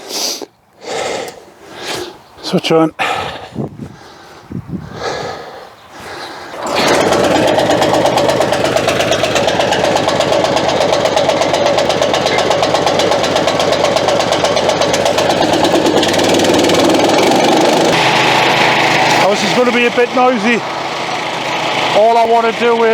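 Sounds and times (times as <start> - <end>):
wood chipper running: 6.0 - 22.9.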